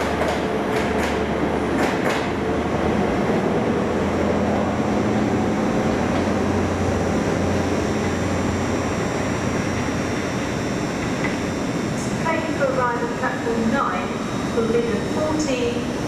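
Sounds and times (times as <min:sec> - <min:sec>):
train engine rumble: 0:00.0 - 0:16.0
faint high whine: 0:04.1 - 0:16.0.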